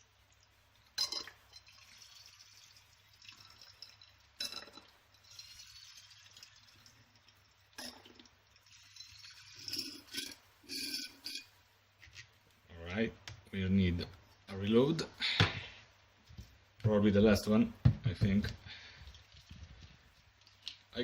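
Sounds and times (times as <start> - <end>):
liquid trickling and dripping: 0.0 - 10.4.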